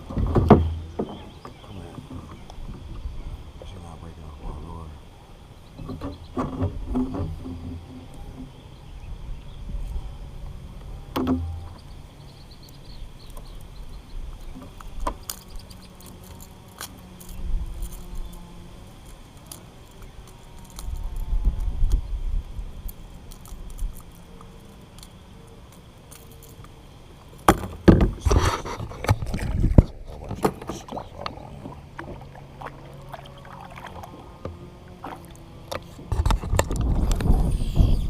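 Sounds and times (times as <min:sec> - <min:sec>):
wind rumbling on microphone: 0:00.0 - 0:12.1, 0:17.3 - 0:19.1, 0:20.0 - 0:24.4, 0:27.8 - 0:38.0.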